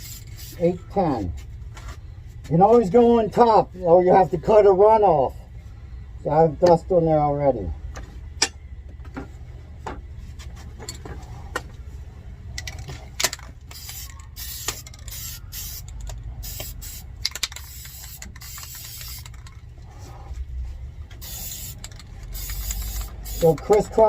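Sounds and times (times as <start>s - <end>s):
spray paint can hissing: 0.0s - 0.6s, 13.7s - 19.4s, 21.2s - 23.7s
steady low hum: 0.0s - 24.0s.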